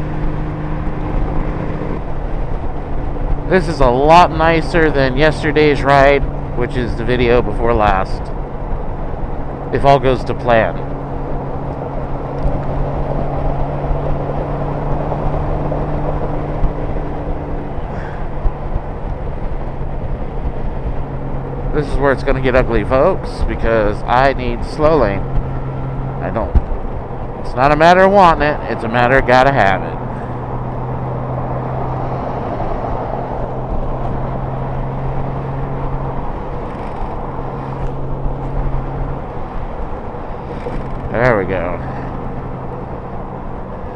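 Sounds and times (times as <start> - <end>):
wind noise: 0.0 - 29.3
motorcycle engine cruising: 0.0 - 43.9
road noise: 0.0 - 43.9.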